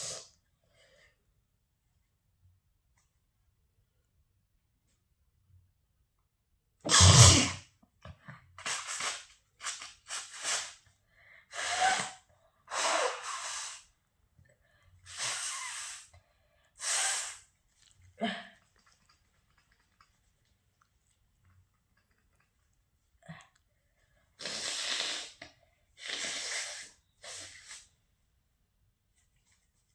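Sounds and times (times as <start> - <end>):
person sneezing: 6.9 - 7.6.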